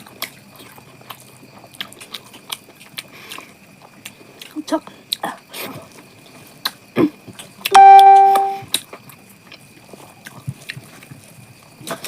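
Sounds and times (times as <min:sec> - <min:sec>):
loud pitched tone: 0:07.8 - 0:08.6.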